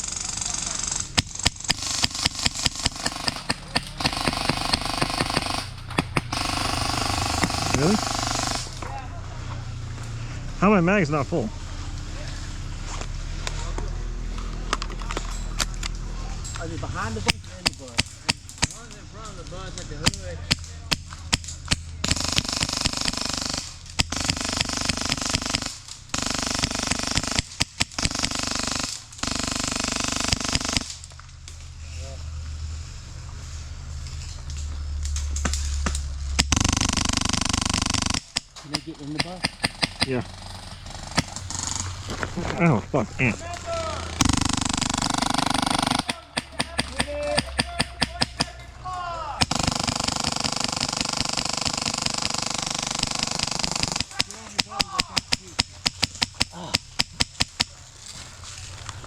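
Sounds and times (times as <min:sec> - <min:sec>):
airsoft rifle shots: 0:00.0 - 0:09.0, 0:17.2 - 0:18.8, 0:20.0 - 0:31.1, 0:35.4 - 0:42.5, 0:43.2 - 0:48.7, 0:49.4 - 0:57.8
single airsoft gun shot: 0:44.2 - 0:48.6.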